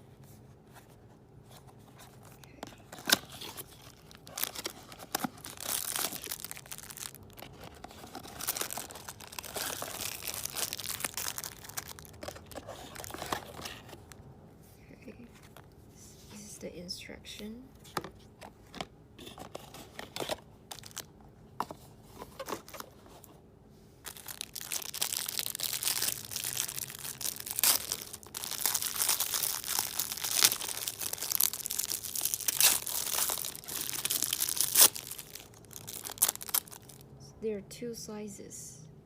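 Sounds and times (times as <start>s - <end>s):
packaging crinkling and rustling: 1.5s - 14.2s, 17.9s - 23.4s, 24.0s - 37.0s.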